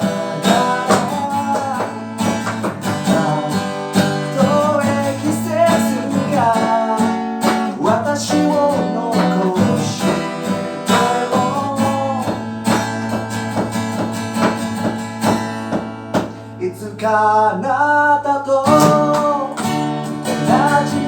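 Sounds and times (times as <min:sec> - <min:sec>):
drums: 0:00.0 - 0:16.4
guitar melody: 0:00.0 - 0:17.5, 0:18.5 - 0:21.0.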